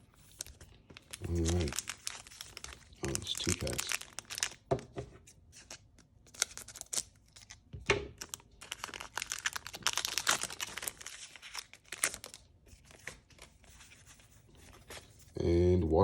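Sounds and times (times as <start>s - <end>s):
foil wrapper crinkling and tearing: 0.0s - 4.7s, 5.6s - 13.6s.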